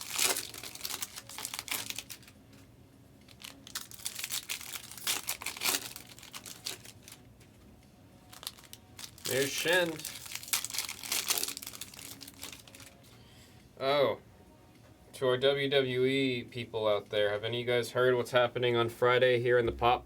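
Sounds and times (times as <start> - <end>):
card pack wrappers crinkling: 0.0 - 2.4, 3.2 - 7.3, 8.3 - 13.1
cards rustling: 0.0 - 2.4, 3.3 - 7.3, 8.3 - 13.1.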